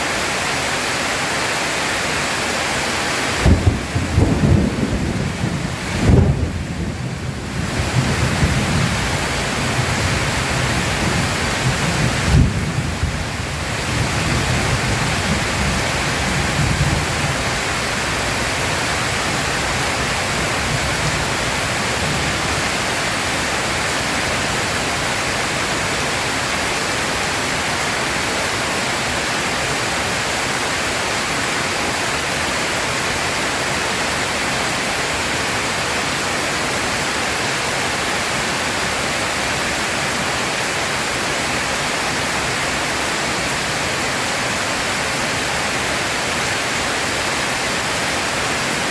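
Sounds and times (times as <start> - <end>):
heavy rain pouring: 0.0 - 48.9
thunder rumbling: 3.4 - 23.0.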